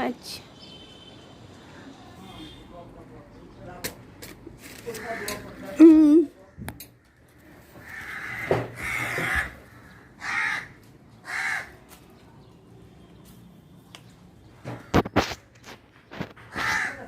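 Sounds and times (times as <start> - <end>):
crow cawing: 4.9 - 5.8, 6.6 - 11.9, 16.5 - 17.0
sharp knocks: 8.4 - 9.5.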